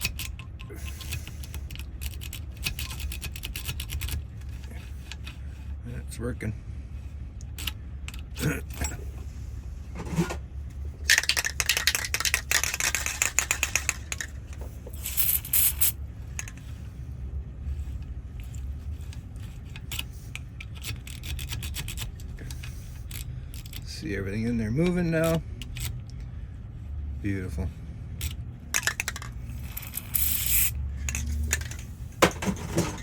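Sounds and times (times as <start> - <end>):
key rattling in lock: 0.0 - 5.4, 11.1 - 16.6, 18.5 - 23.9, 28.2 - 33.0.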